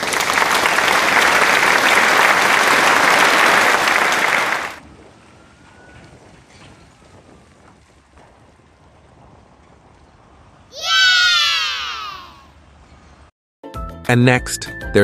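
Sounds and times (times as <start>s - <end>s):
crowd applause: 0.0s - 4.8s.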